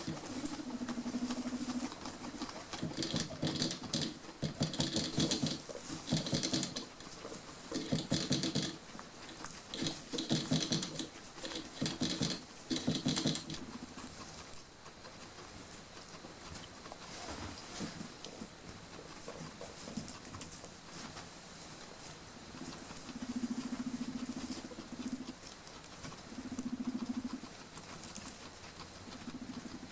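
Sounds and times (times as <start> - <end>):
guinea pigs rustling and scratching: 0.0 - 29.9.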